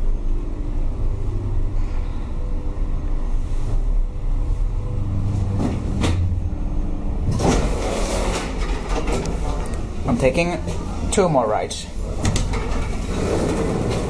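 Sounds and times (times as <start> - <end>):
hydraulic pump motor hum: 5.2 - 14.0
noisy clatter: 7.2 - 14.0.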